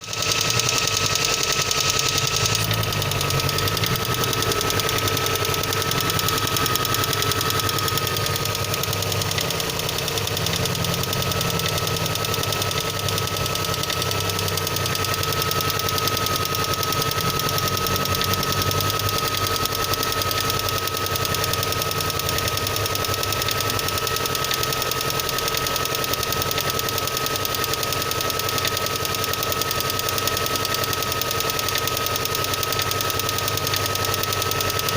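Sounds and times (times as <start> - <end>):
engine running with rapid knocking: 0.0 - 34.9.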